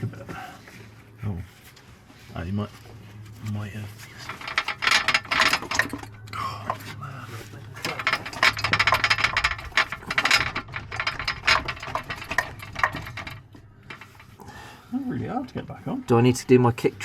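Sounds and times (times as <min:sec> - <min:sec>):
low steady hum: 0:00.0 - 0:17.0
rapid ratcheting clicks: 0:04.2 - 0:06.9, 0:07.8 - 0:14.4.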